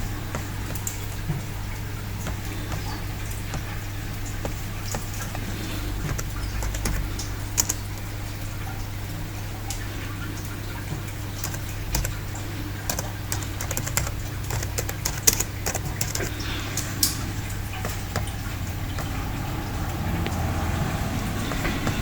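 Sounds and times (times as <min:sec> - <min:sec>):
key and button clicks: 0:00.0 - 0:08.5, 0:11.3 - 0:19.1.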